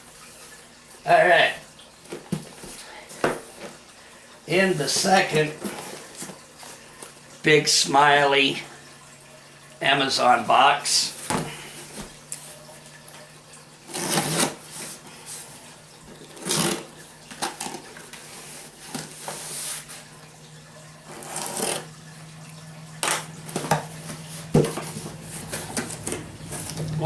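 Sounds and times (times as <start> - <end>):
faint steady hum: 0.0 - 27.0
cardboard box rustling and scraping: 13.9 - 15.6, 21.1 - 21.8, 23.5 - 26.9.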